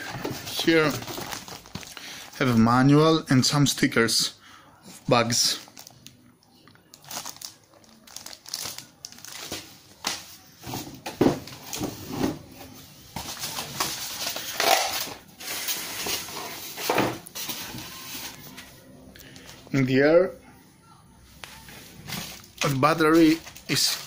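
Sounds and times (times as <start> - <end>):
packaging crinkling and rustling: 0.0 - 2.2, 5.4 - 6.1, 6.9 - 10.2, 22.1 - 24.0.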